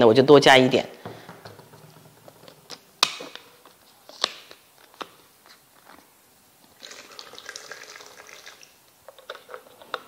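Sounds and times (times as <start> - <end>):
liquid pouring into blender jar: 6.8 - 8.7.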